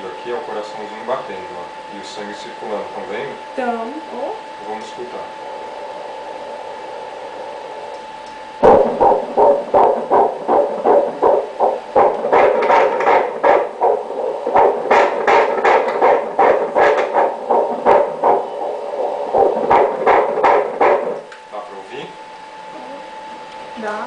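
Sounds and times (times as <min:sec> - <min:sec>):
doppler speaker hum: 0:00.0 - 0:24.0
fetal heartbeat pulsing: 0:08.5 - 0:21.3.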